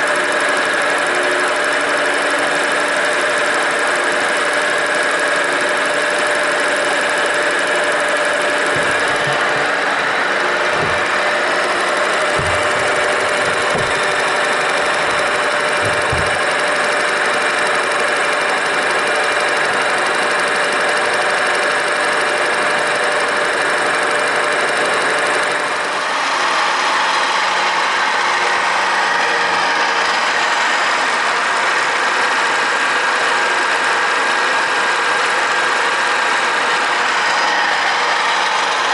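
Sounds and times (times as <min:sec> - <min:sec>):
milling machine cutting steel: 0:00.0 - 0:38.9
low thuds: 0:08.7 - 0:11.6, 0:12.2 - 0:16.4.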